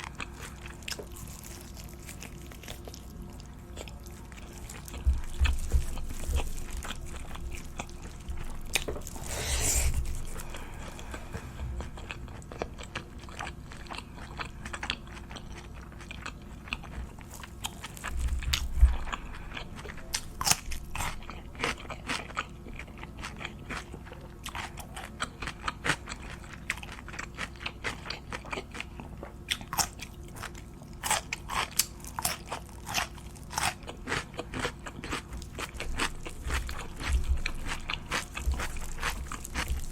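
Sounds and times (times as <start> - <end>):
crunchy chewing: 0.0 - 39.9.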